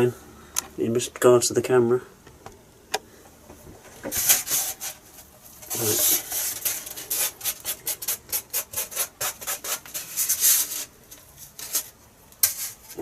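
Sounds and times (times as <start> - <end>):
rubbing strokes on foam: 5.7 - 11.0.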